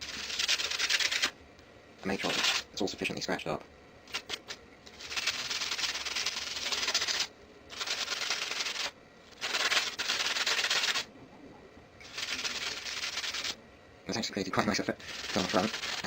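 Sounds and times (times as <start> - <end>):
sandpaper scratching metal: 0.0 - 1.3, 2.2 - 2.7, 4.1 - 11.1, 12.0 - 13.6, 15.0 - 16.0.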